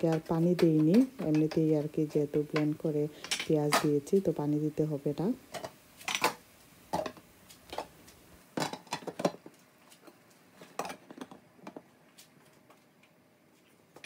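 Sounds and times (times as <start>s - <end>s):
utensils clinking against pots: 3.2s - 4.0s.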